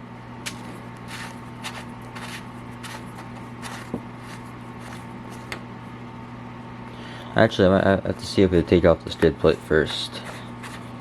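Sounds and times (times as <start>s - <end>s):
low electrical hum: 0.0s - 11.0s
scratchy rustling and handling: 0.4s - 5.6s, 9.8s - 11.0s.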